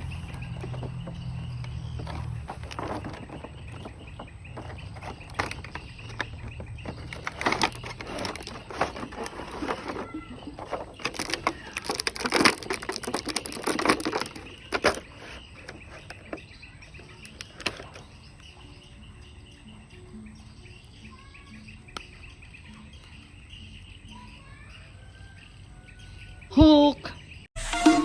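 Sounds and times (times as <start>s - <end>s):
plastic packaging crinkling: 0.0s - 16.4s.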